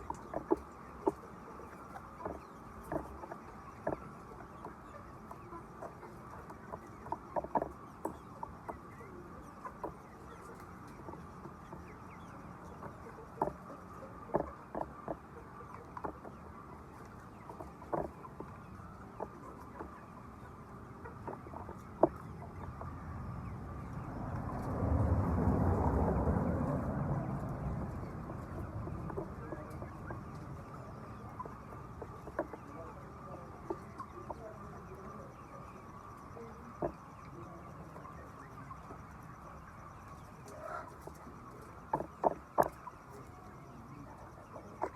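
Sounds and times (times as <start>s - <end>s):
chickens clucking: 0.0s - 44.9s
steady background hum: 0.0s - 44.9s
low rumble: 22.6s - 31.8s.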